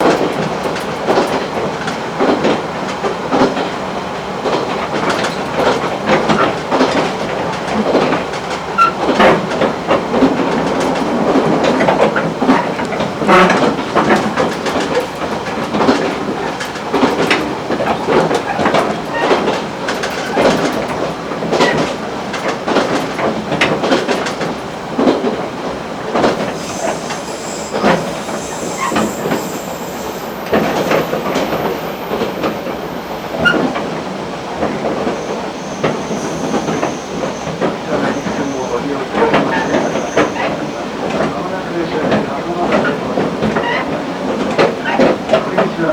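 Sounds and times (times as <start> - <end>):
railcar running noise: 0.0 - 45.9
wheels clacking over rail joints: 0.0 - 45.9
thin high squeal: 26.4 - 33.8, 35.3 - 38.8.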